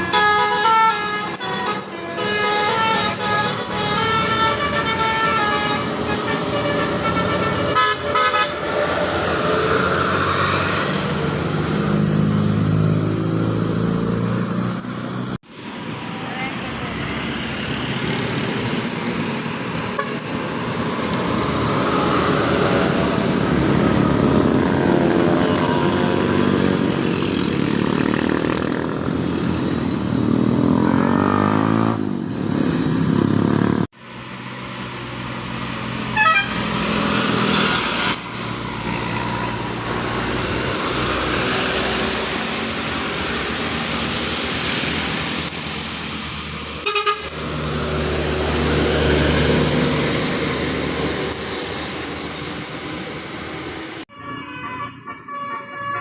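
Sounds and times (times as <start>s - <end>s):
bus horn tooting: 0.0s - 9.2s, 19.9s - 20.4s, 36.1s - 36.8s, 46.8s - 47.6s, 54.1s - 56.0s
bus engines: 0.0s - 56.0s
passing road traffic: 0.0s - 56.0s.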